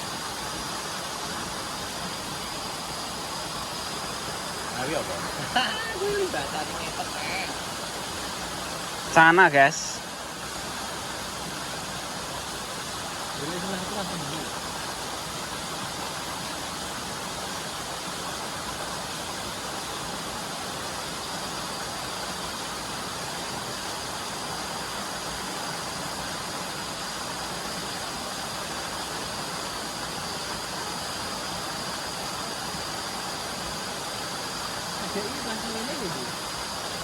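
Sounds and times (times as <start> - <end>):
water flowing: 0.0 - 37.0
faint high steady tone: 4.6 - 7.8.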